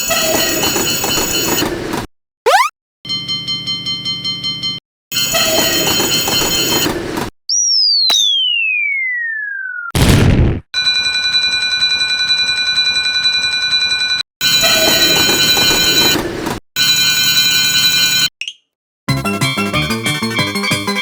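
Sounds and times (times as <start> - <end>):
electronic alarm tone: 2.5 - 2.7
descending whistle tone: 7.6 - 9.9.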